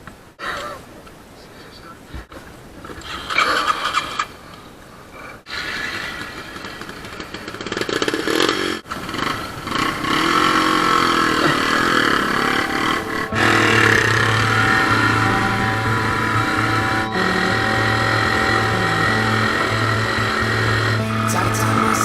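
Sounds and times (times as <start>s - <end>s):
dirt bike engine revving: 5.9s - 21.3s.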